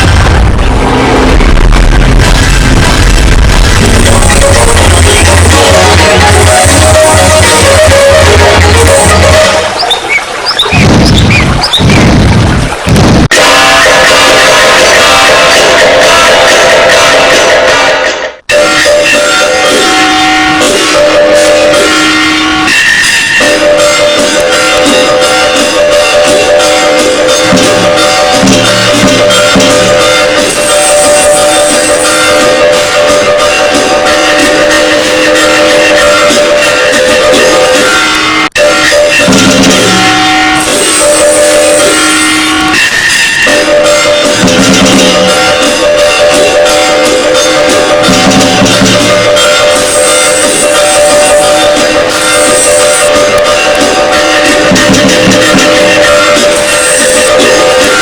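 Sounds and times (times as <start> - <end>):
fast percussion: 0.0 - 58.0
held melodic notes: 3.2 - 11.8.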